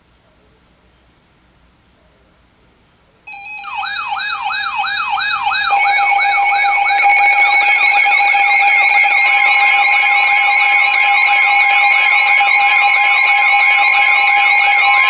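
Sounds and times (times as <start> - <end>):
electronic siren sweeps: 3.3 - 15.0.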